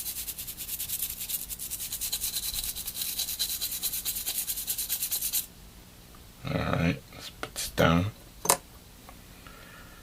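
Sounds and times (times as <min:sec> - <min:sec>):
toothbrush scrubbing circuit board: 0:00.0 - 0:05.5.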